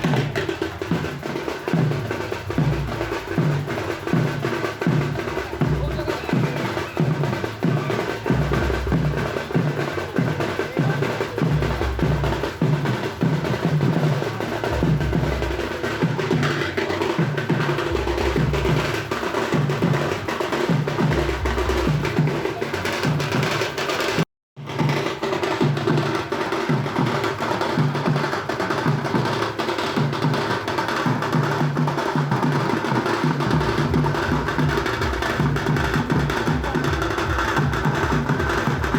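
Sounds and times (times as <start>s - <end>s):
dhol drumming: 0.0s - 38.9s
heavy low drum thump: 11.4s - 20.2s, 33.4s - 38.9s.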